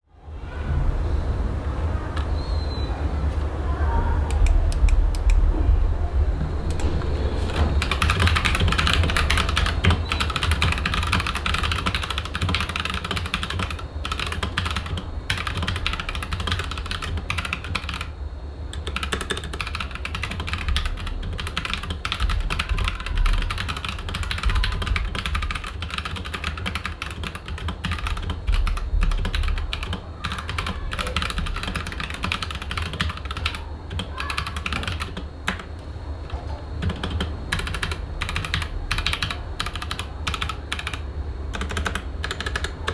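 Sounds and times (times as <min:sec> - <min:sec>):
mechanical keyboard typing: 0:06.7 - 0:35.7, 0:36.3 - 0:42.9.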